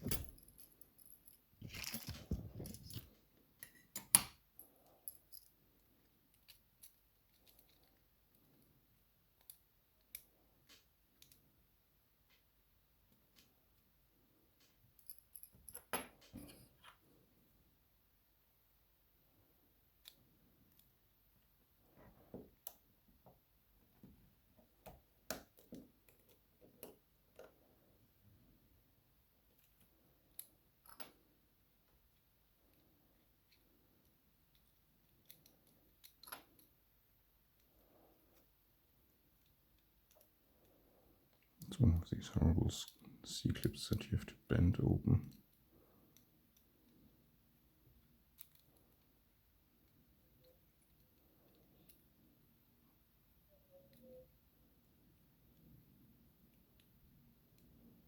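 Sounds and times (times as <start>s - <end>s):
metal tools rustling and scraping: 0.0s - 4.0s
small metal clicks: 34.5s - 36.7s, 48.3s - 49.1s.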